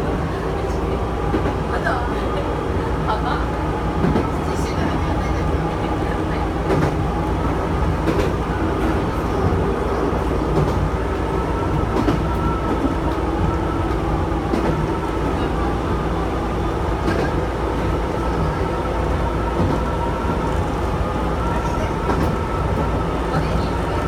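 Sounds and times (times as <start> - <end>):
electric train rumbling: 0.0 - 24.0.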